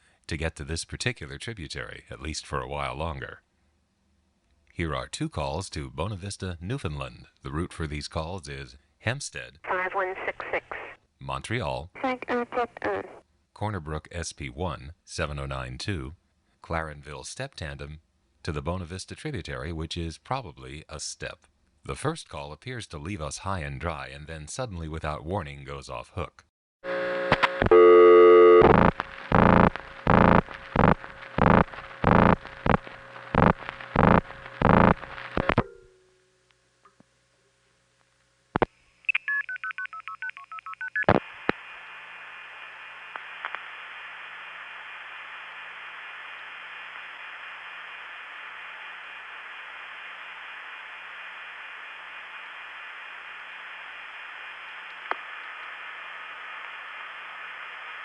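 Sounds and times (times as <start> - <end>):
pulsing telephone tone: 26.9 - 32.8
multifrequency dialing tones: 26.9 - 35.6, 38.6 - 53.5
telephone line hiss: 26.9 - 35.7
telephone line click: 27.2 - 29.6.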